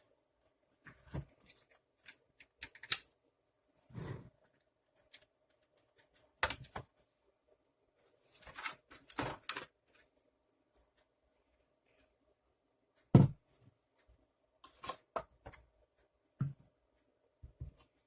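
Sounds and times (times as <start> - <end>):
plastic parts clicking and knocking: 0.9 - 3.1, 5.1 - 6.9, 8.6 - 9.8.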